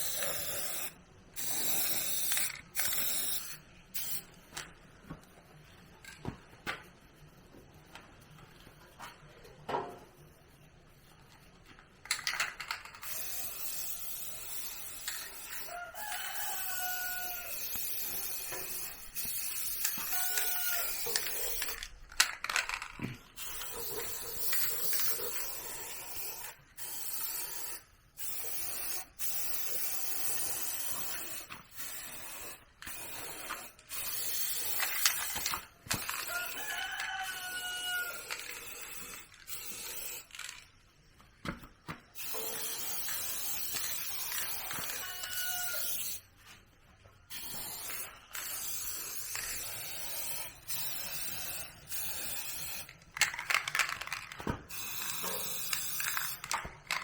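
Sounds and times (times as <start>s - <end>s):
rooster crowing: 15.5s - 17.8s, 20.0s - 21.4s, 36.2s - 38.4s, 44.4s - 46.1s.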